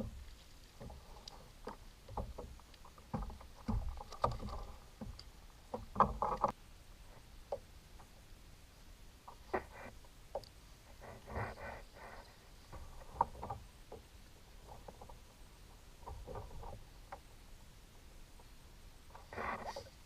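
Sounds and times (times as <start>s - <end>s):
sharp clicks and knocks: 0.8s - 6.6s.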